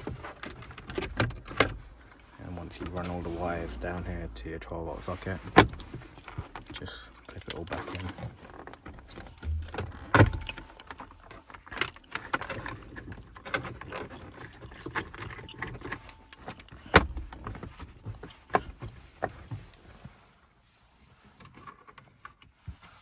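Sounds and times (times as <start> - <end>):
plastic trim clunks: 5.2 - 6.8, 7.6 - 12.8
plastic trim clicks and knocks: 8.8 - 11.9.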